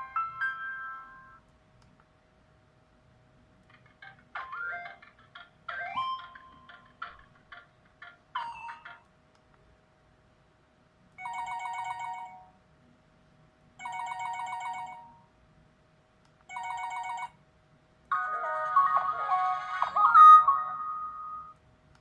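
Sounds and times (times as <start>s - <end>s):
melodic ringtone: 0.0s - 1.4s, 4.4s - 6.8s, 18.1s - 21.6s
electronic ringtone trill: 18.1s - 21.6s.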